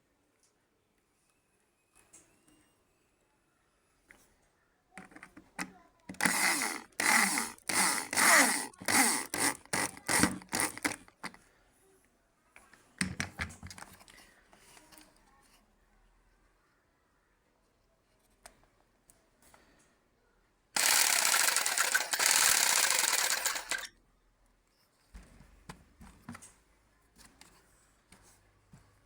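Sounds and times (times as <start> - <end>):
woodworking power tool running: 6.1 - 11.0, 20.8 - 23.9.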